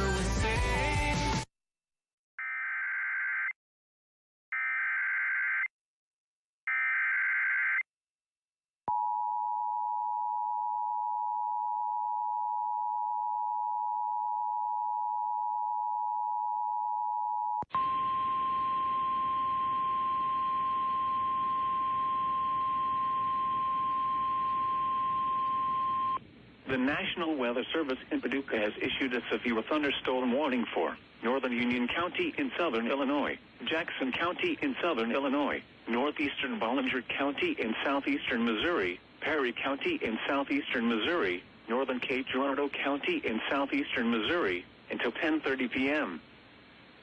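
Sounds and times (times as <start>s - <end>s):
steady warning alarm tone: 17.7s - 26.2s
two-tone attention signal: 17.7s - 26.2s
radio hiss: 26.7s - 46.2s.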